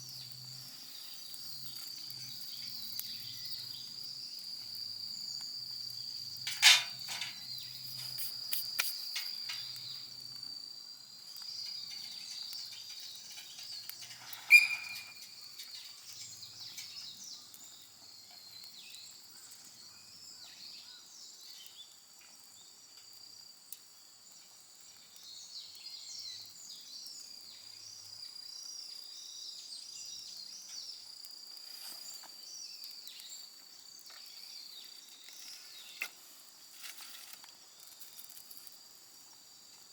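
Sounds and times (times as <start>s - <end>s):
insects trilling: 0.0s - 39.9s
bird chirps: 11.4s - 21.8s.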